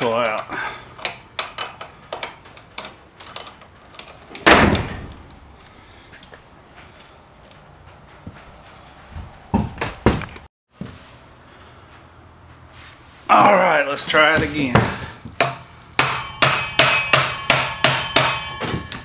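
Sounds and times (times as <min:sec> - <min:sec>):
metal tools clanking on axle: 0:00.0 - 0:04.4.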